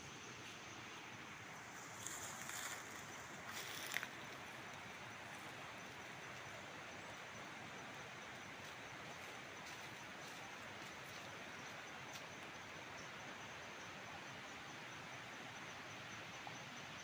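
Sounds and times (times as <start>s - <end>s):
outdoor background hiss: 0.0s - 17.0s.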